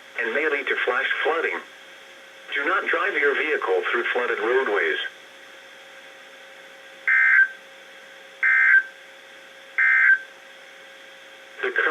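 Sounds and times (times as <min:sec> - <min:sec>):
faint steady hum: 0:00.0 - 0:11.9
digital data screech bursts: 0:07.1 - 0:07.5, 0:08.4 - 0:08.8, 0:09.8 - 0:10.2.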